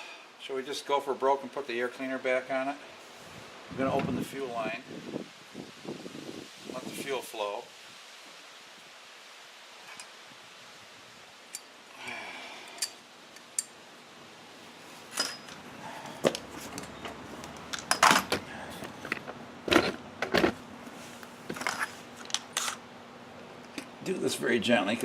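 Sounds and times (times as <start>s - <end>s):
metal engine parts clinking: 15.1s - 15.6s.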